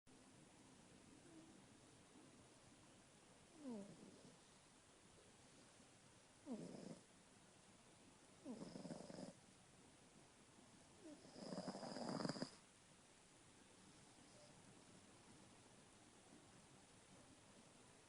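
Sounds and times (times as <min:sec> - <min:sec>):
cat snoring with whistle: 0:03.6 - 0:04.3, 0:06.4 - 0:07.0, 0:08.4 - 0:09.4, 0:11.0 - 0:12.6.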